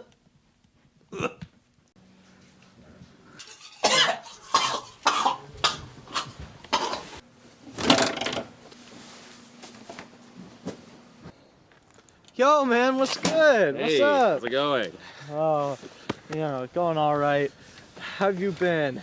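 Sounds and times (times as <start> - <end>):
man coughing: 1.1 - 1.4, 3.8 - 7.0.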